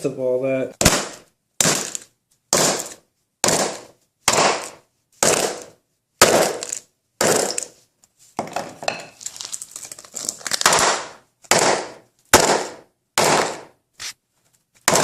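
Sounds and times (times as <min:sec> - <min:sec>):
mallet smashing a phone: 0:00.8 - 0:07.8, 0:10.4 - 0:13.8.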